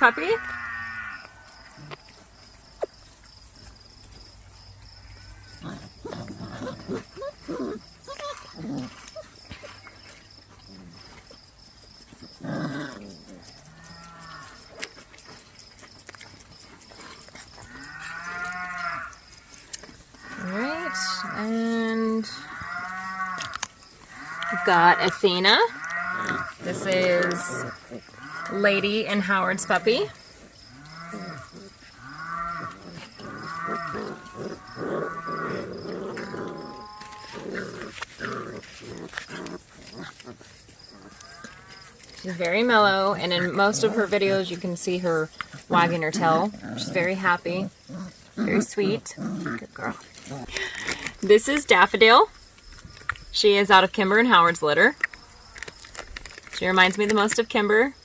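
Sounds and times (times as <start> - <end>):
cattle mooing: 0.0 - 1.9, 17.7 - 19.2, 20.2 - 40.0, 41.0 - 41.7.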